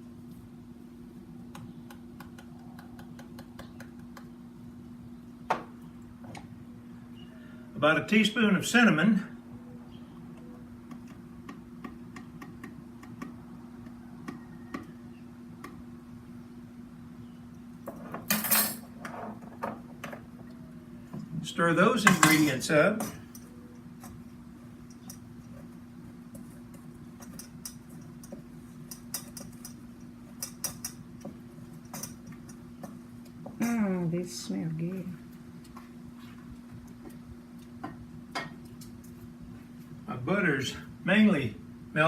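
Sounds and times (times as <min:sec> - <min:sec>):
spoon knocking against a bowl: 0:22.0 - 0:22.5.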